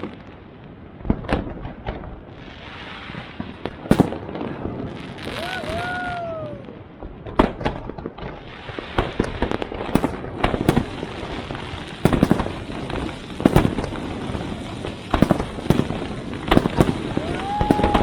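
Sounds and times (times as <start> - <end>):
fireworks crackling: 1.1 - 18.0
sharp firework bangs: 3.7 - 5.5, 9.0 - 18.0.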